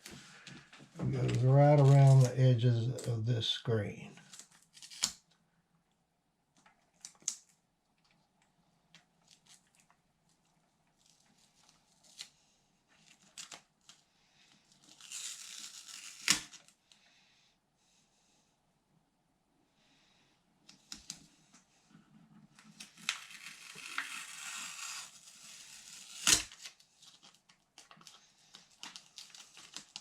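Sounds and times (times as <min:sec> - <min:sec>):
adhesive backing tearing: 0:04.3 - 0:05.2, 0:14.8 - 0:16.7, 0:22.8 - 0:26.7.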